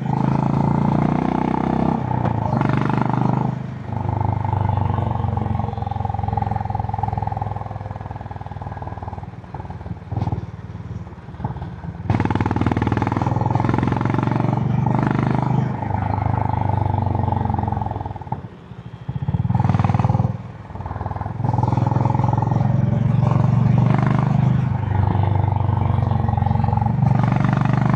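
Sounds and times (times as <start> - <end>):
motorcycle engine revving: 0.0 - 27.9.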